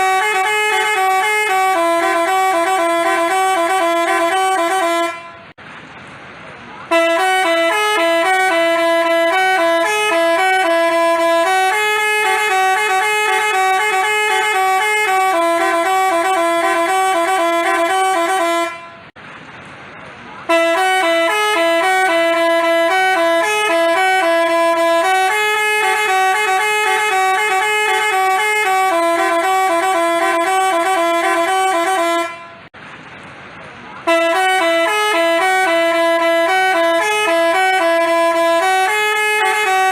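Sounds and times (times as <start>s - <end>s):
multi-tone bus horn melody: 0.0s - 5.6s, 6.8s - 19.2s, 20.4s - 32.8s, 34.0s - 39.9s.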